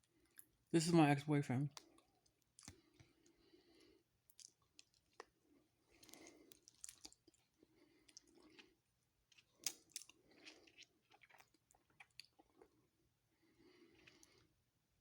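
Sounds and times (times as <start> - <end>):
faint chewing mouth sounds: 0.0 - 0.6, 1.7 - 14.7.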